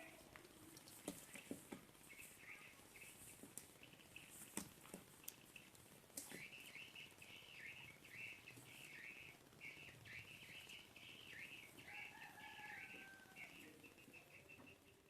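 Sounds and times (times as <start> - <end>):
small animal chirping: 1.2 - 15.0
thin steady whistling tone: 6.2 - 15.0.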